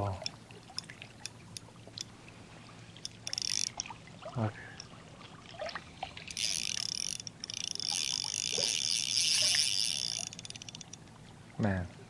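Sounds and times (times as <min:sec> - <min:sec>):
fishing reel whirring: 0:03.0 - 0:03.8, 0:06.3 - 0:11.0
fishing reel clicks: 0:03.0 - 0:03.9, 0:06.3 - 0:11.0.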